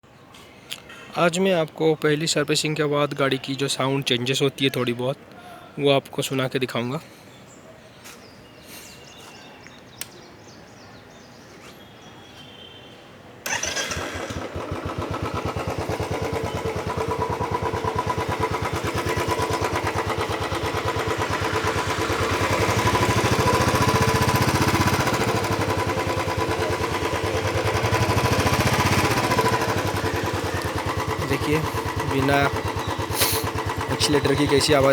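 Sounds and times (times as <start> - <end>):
motorcycle engine idling: 13.5 - 34.9.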